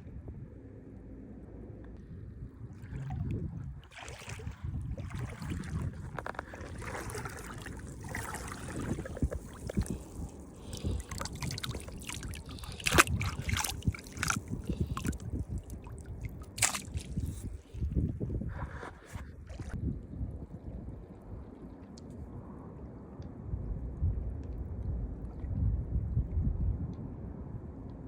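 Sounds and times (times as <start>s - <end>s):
wind rumble on microphone: 0.0s - 28.0s
water sloshing and splashing: 2.6s - 19.8s.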